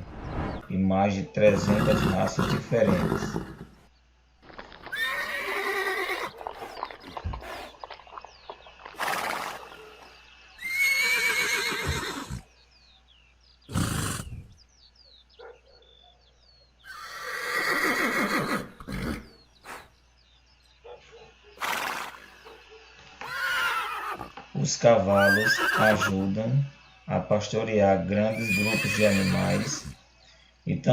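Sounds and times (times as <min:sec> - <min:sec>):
horse neighing: 0:01.5 - 0:03.8, 0:04.9 - 0:07.7, 0:09.0 - 0:09.8, 0:10.6 - 0:12.4, 0:13.7 - 0:14.5, 0:16.9 - 0:19.4, 0:21.6 - 0:22.4, 0:23.2 - 0:24.4, 0:25.0 - 0:26.3, 0:28.3 - 0:30.0
faint bird chirps: 0:09.6 - 0:24.2, 0:25.2 - 0:30.9.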